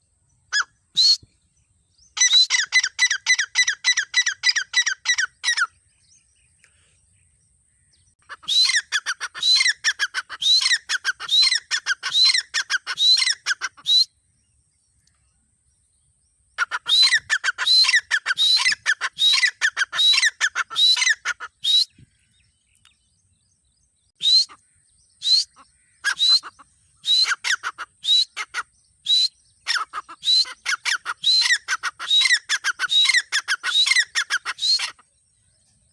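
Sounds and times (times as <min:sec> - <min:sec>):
francolin squeaky calls: 0:00.5 - 0:01.2, 0:02.1 - 0:05.8, 0:08.3 - 0:14.1, 0:16.6 - 0:22.0, 0:24.2 - 0:35.1.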